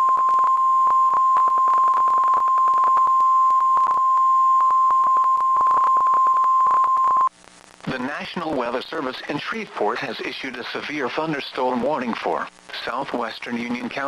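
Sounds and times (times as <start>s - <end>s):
crackling static clicks: 0.0s - 14.0s.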